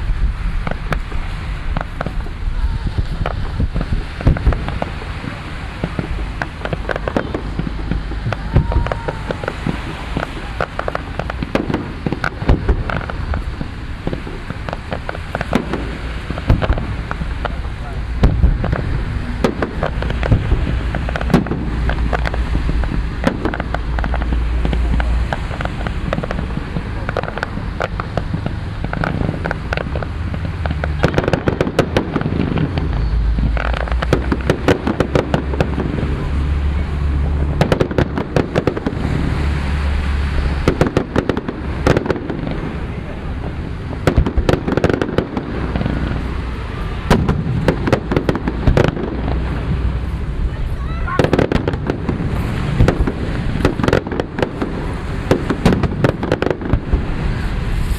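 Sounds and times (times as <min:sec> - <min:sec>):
fireworks bangs and crackles: 0:00.0 - 0:57.9.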